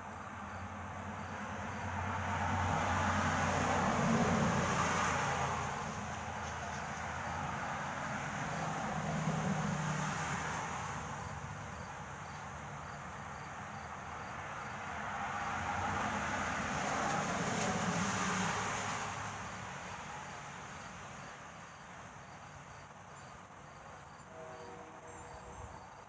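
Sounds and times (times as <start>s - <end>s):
insect chirping: 0.0s - 2.0s, 11.2s - 14.8s, 20.2s - 26.0s.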